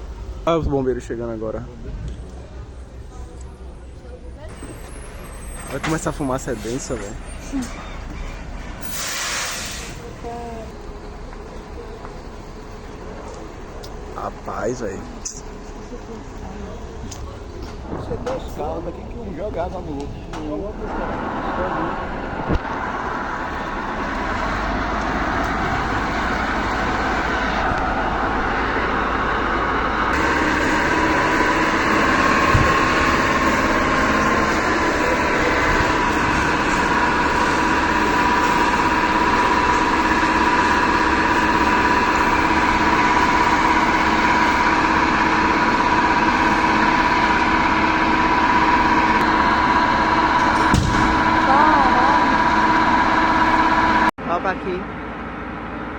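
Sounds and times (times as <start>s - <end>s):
fire truck engine and pump running: 0.0s - 55.9s
loud even hiss: 8.8s - 10.1s
steady whine: 10.2s - 55.9s.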